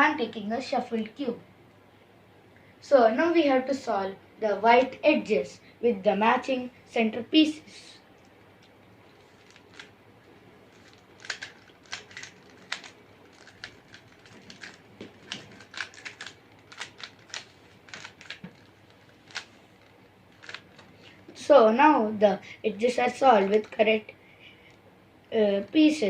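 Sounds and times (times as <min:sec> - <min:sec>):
plastic puzzle cube clicks: 0:10.7 - 0:19.5, 0:20.4 - 0:20.8.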